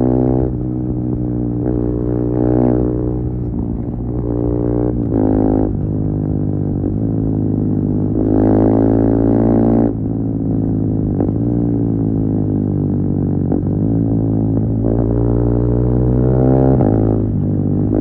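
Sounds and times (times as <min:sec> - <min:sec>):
motorcycle engine revving through gears: 0:00.0 - 0:18.0.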